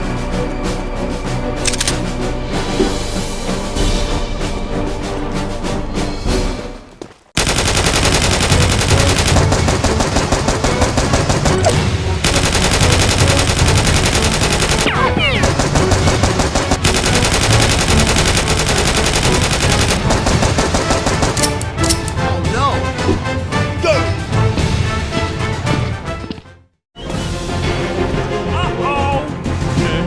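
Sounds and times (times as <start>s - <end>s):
machine-gun fire: 7.4s - 21.6s.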